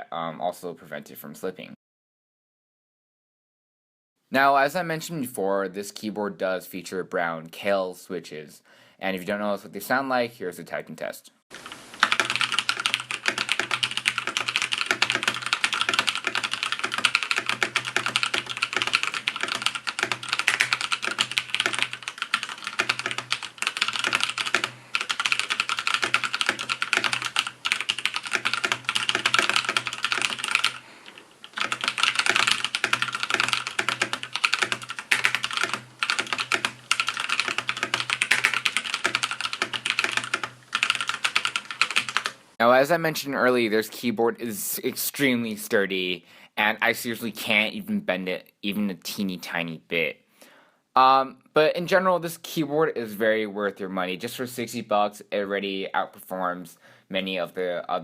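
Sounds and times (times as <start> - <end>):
mechanical keyboard typing: 11.6 - 42.4.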